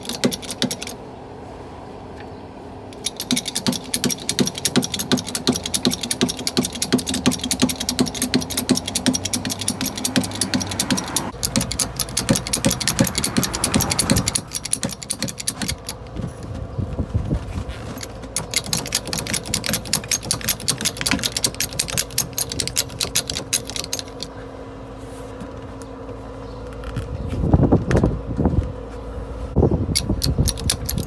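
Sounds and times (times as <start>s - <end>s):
hand tool rapid clicking: 0.0s - 1.0s, 3.0s - 16.4s, 17.8s - 24.3s, 30.0s - 31.0s.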